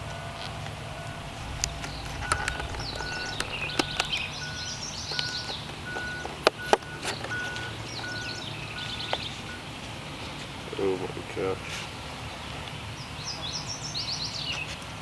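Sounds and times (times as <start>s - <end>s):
low rumble: 0.0s - 6.4s
vehicle reversing beeper: 0.0s - 9.7s.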